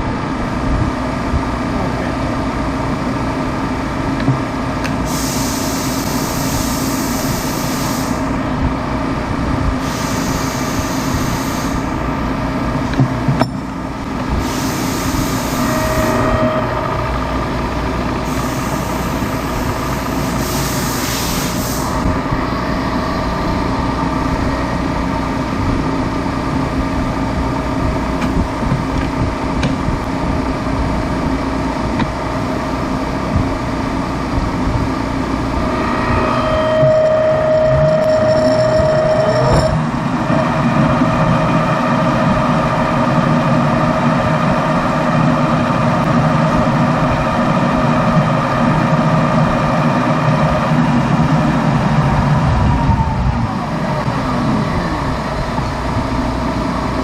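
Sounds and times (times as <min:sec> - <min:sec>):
machinery humming: 0:00.0 - 0:57.0
high hiss bursts: 0:05.0 - 0:08.3, 0:09.8 - 0:12.0, 0:14.4 - 0:16.1, 0:18.3 - 0:22.1.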